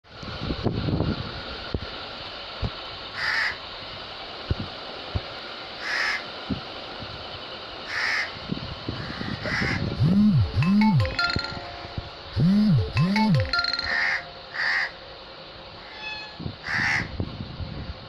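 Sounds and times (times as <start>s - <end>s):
crow cawing: 3.2s - 3.6s, 5.8s - 6.2s, 7.9s - 8.3s, 14.6s - 14.9s, 16.6s - 17.1s.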